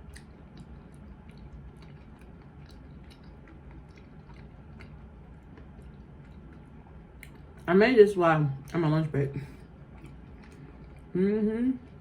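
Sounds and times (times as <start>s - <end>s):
chewing crunchy food: 0.0s - 7.7s, 9.5s - 11.2s.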